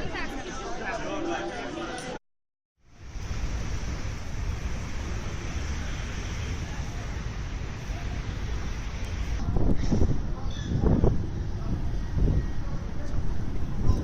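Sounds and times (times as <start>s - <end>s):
wind on microphone: 3.0s - 14.0s.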